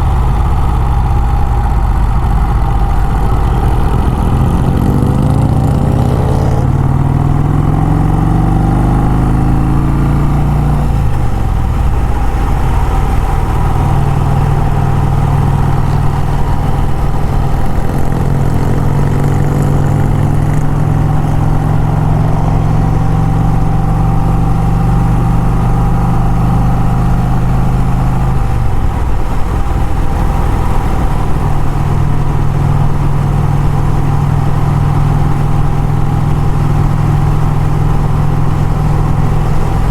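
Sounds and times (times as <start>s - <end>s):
motorcycle engine accelerating: 0.0s - 39.9s.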